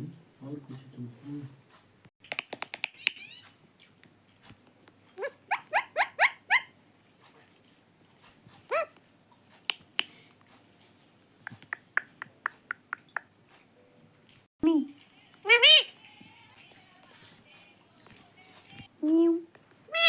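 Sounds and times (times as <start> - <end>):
sharp clicks: 2.2 - 3.2
parakeet upward calls: 2.9 - 3.5, 5.5 - 6.7, 15.5 - 15.9.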